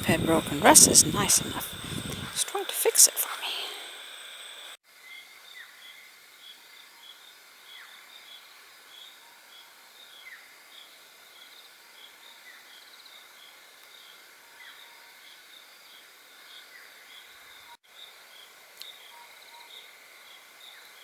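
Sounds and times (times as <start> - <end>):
insects chirping: 0.0 - 4.8.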